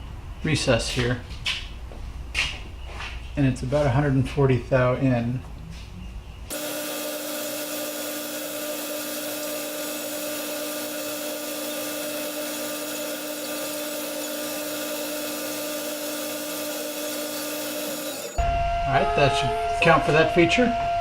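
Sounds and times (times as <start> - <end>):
metal lathe humming and whining: 6.5 - 18.4.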